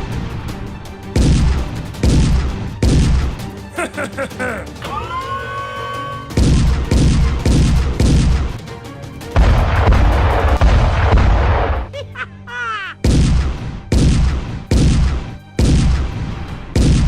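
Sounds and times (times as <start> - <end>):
music with booming bass beat: 0.0 - 4.5, 6.3 - 8.6, 9.3 - 11.9, 13.0 - 17.0.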